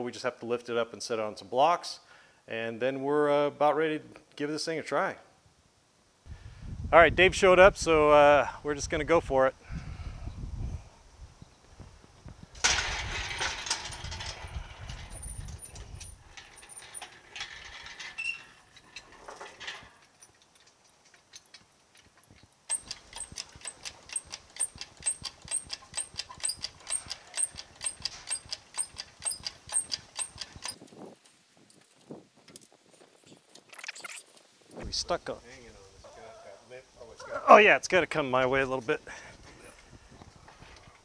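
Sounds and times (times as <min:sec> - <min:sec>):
loud scraping rustle: 0:12.5 - 0:34.9
hydraulic hand pump clicking and squeaking: 0:14.8 - 0:30.8.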